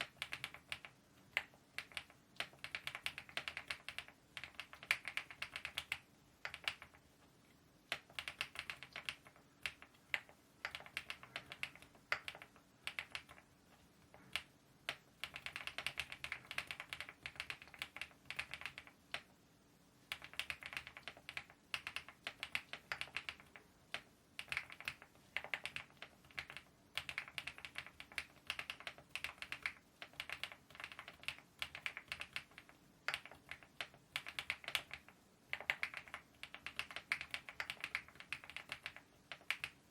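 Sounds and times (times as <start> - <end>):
typing on mechanical keyboard: 0.0 - 7.0, 7.9 - 13.5, 14.1 - 19.3, 20.1 - 39.9.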